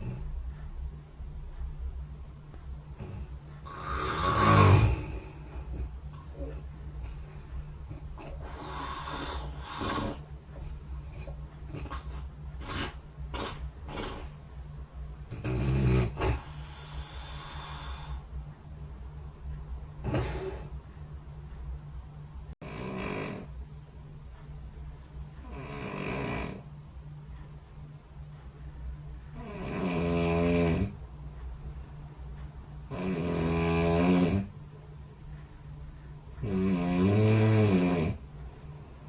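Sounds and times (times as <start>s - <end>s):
low steady hum: 0.0s - 39.0s
low-pitched snore: 3.0s - 6.5s, 8.2s - 10.3s, 11.2s - 14.4s, 15.3s - 18.2s, 20.0s - 20.7s, 22.6s - 23.5s, 25.4s - 26.7s, 29.4s - 31.0s, 32.9s - 34.5s, 36.4s - 38.2s
breathy snort: 3.0s - 7.3s, 8.0s - 10.3s, 11.1s - 14.5s, 15.3s - 18.2s, 20.0s - 20.7s.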